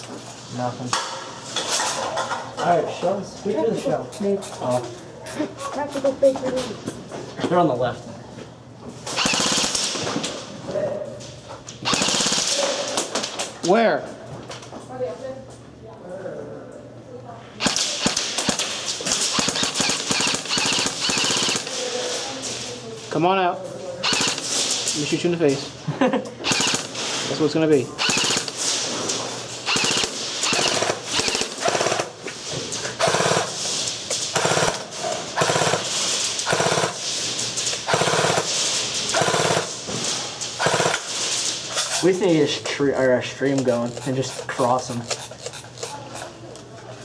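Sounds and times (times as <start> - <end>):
airsoft guns firing full-auto: 9.1 - 10.2, 11.8 - 13.3, 17.6 - 21.9, 24.0 - 24.9, 26.4 - 27.1, 28.0 - 28.9, 29.6 - 32.2, 33.0 - 39.8, 40.6 - 41.4.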